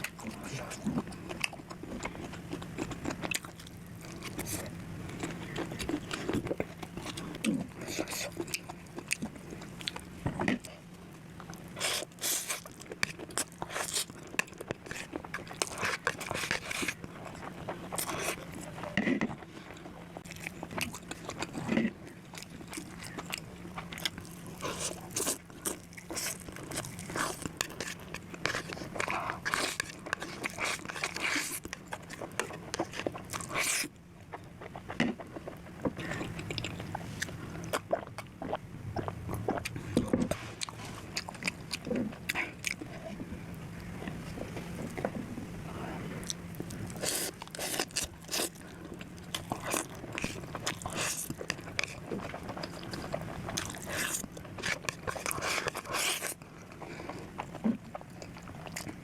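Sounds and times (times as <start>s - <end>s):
person biting and chewing food: 11.5s - 43.2s, 46.2s - 59.0s.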